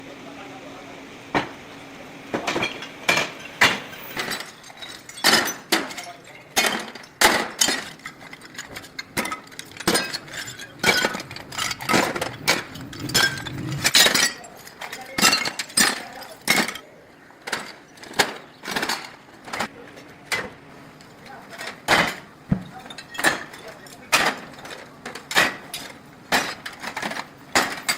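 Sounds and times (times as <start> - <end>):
scrap metal clanking: 2.4 - 16.8, 21.5 - 27.9.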